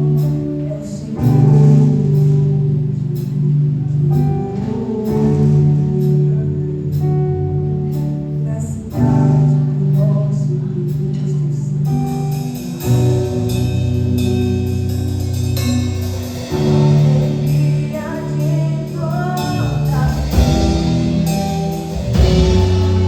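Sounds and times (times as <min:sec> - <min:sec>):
guitar: 0:00.0 - 0:23.0
sustained bass chords: 0:00.0 - 0:23.0
person singing: 0:15.7 - 0:23.0.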